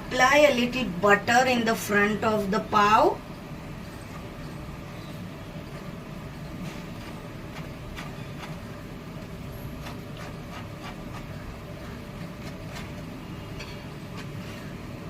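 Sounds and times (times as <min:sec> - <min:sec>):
buns sizzling in butter: 0:03.6 - 0:15.0.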